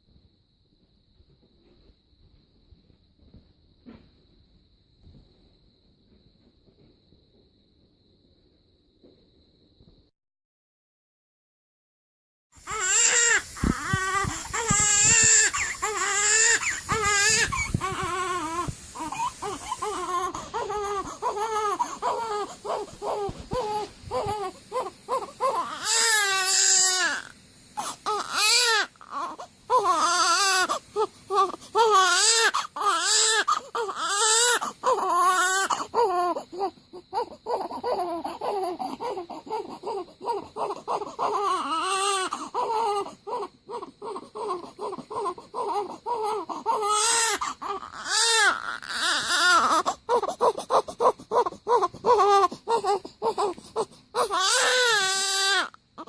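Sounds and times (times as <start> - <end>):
newborn baby crying: 12.6 - 56.0.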